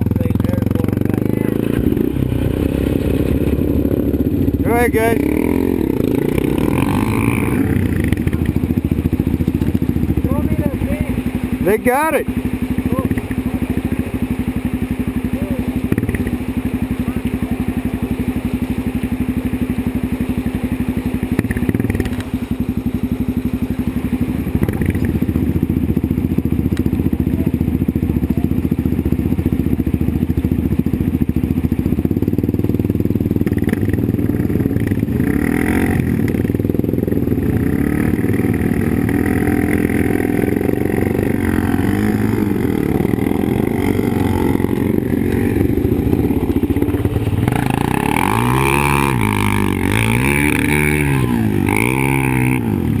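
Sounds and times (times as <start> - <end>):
quad bike engine running: 0.0 - 53.0.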